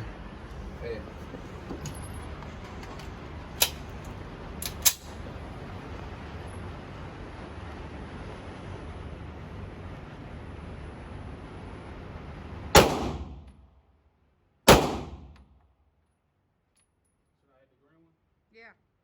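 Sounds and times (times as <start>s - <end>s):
low hum: 0.0s - 14.0s.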